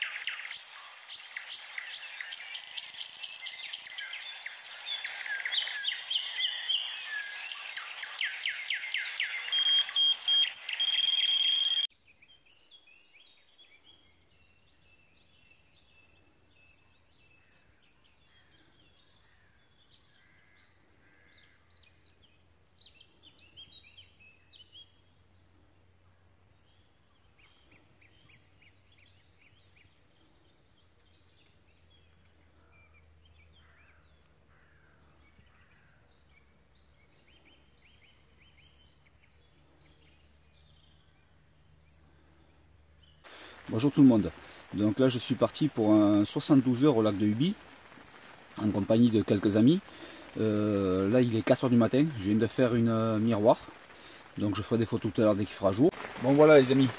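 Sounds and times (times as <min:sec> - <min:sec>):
songbirds chirping and singing: 0:00.0 - 0:25.8, 0:26.5 - 0:56.9
distant birdsong: 0:00.0 - 0:56.9
electronic beeps: 0:09.3 - 0:11.9.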